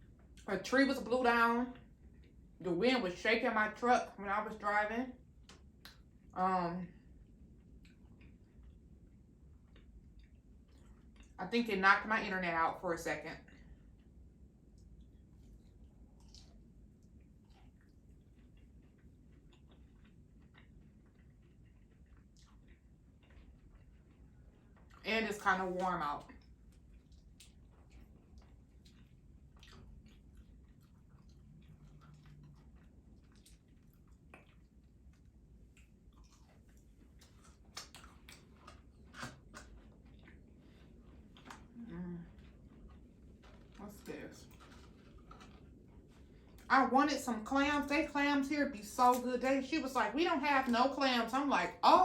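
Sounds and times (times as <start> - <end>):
chewing with wet mouth clicks: 0.0 - 0.5, 1.7 - 2.6, 5.4 - 6.3, 7.0 - 11.4, 13.4 - 46.7
wet mouth clicks and smacks: 5.5 - 6.1, 26.4 - 40.5.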